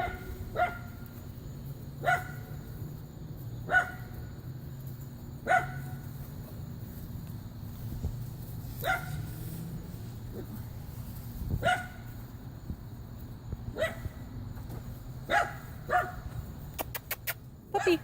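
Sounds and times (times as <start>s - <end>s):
dog barking: 0.0s - 0.9s, 2.0s - 2.4s, 3.7s - 4.0s, 5.5s - 6.0s, 8.8s - 9.2s, 11.6s - 12.0s, 13.8s - 14.1s, 15.3s - 16.2s.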